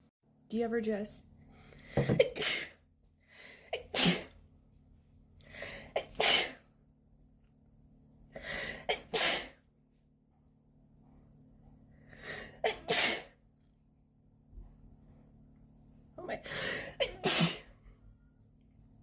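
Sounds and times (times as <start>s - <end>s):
person sneezing: 2.0s - 2.8s, 8.6s - 9.6s, 12.4s - 13.3s, 16.5s - 17.7s.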